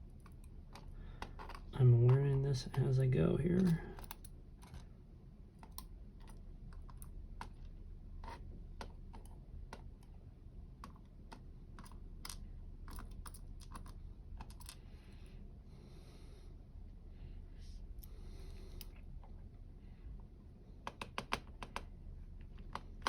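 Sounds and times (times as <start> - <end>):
small metal clicks of lock parts: 3.6 - 4.9, 5.6 - 7.6, 10.8 - 14.8.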